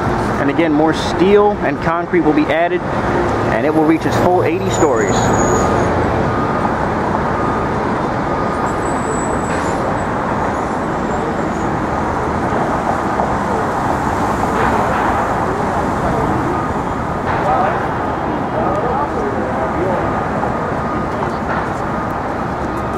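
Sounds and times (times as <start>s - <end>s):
city traffic hum: 0.0s - 22.9s.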